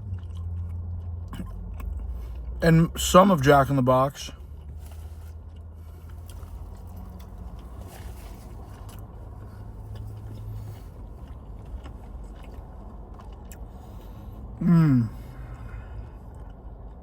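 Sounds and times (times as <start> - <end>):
chewing and biting food: 0.0 - 3.0, 4.4 - 14.6, 15.2 - 17.0
low steady car cabin hum: 0.0 - 17.0
short loud vocal sound: 14.6 - 15.2.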